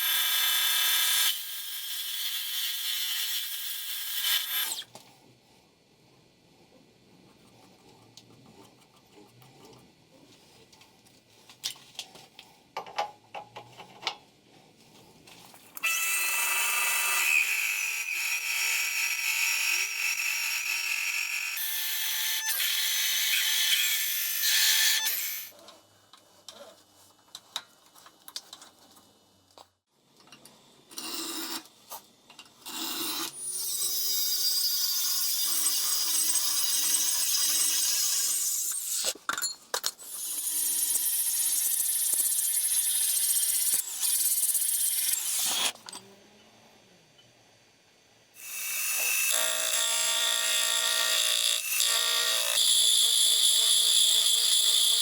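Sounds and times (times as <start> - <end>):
power tool working material: 48.4 - 55.0.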